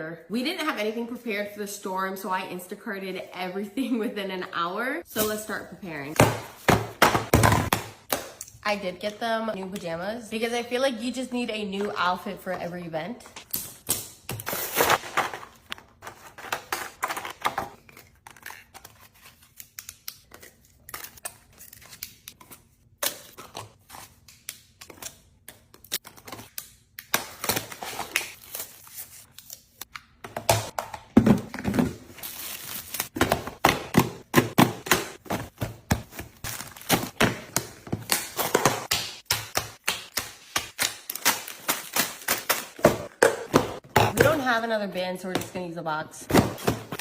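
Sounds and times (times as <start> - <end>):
packaging rustling and crinkling: 31.5 - 33.2.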